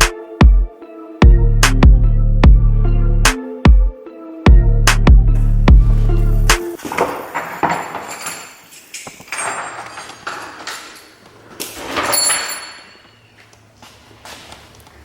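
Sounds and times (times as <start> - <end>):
metal parts scraping and clattering: 6.8 - 13.2.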